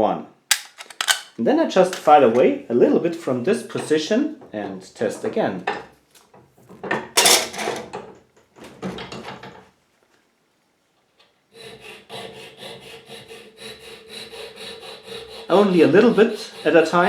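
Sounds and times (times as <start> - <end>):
handling clatter: 0.5 - 1.4, 7.2 - 7.9
hand file rasping on metal key: 11.5 - 17.0.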